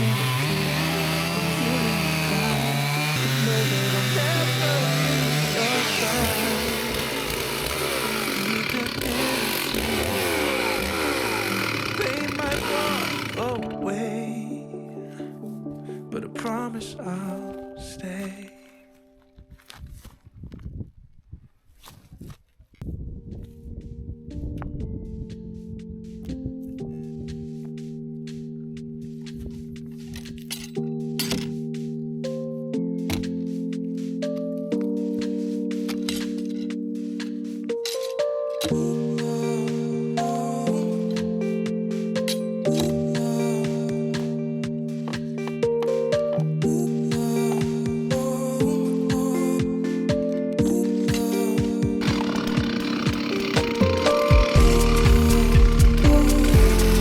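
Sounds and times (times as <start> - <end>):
chainsaw cutting log: 0.0 - 13.7, 52.0 - 57.0
held synth chords: 0.0 - 16.3, 38.7 - 57.0.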